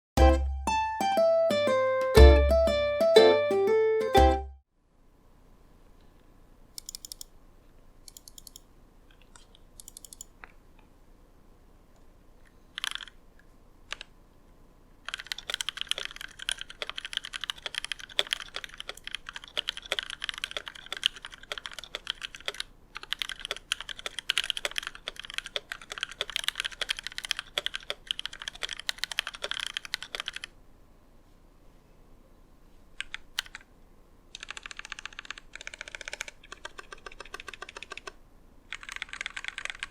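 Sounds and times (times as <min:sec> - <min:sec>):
mechanical keyboard typing: 0:06.8 - 0:07.3, 0:08.1 - 0:08.6, 0:09.4 - 0:10.3, 0:12.7 - 0:13.2, 0:13.9 - 0:14.1, 0:15.0 - 0:30.5, 0:33.0 - 0:33.7, 0:34.3 - 0:39.9.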